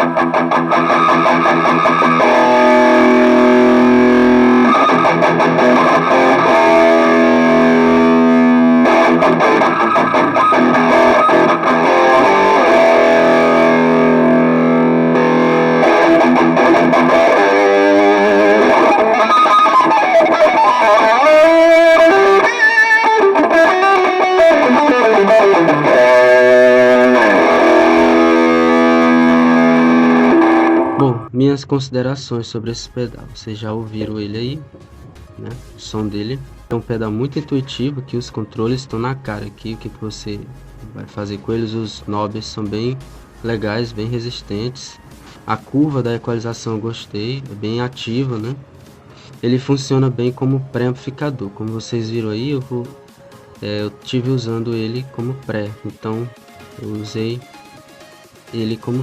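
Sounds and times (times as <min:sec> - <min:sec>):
distorted electric guitar: 0:00.0 - 0:31.4.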